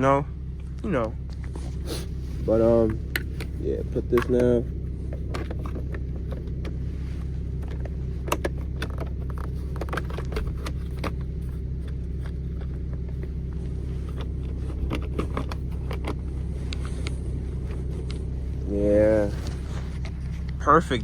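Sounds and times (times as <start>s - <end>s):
steady low hum: 0.0s - 21.0s
plastic parts clicking and knocking: 3.1s - 6.8s, 7.6s - 13.4s, 14.0s - 16.3s.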